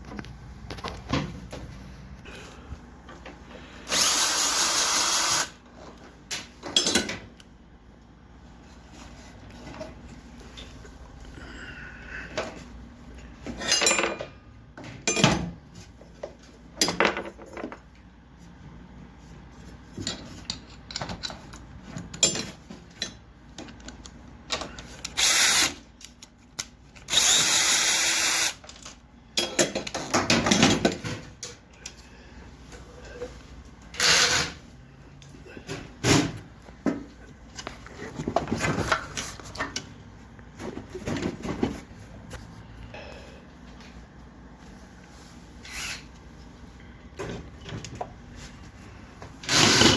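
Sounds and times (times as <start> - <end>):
electric drill whirring: 3.9 - 5.6, 25.2 - 25.8, 27.1 - 28.6.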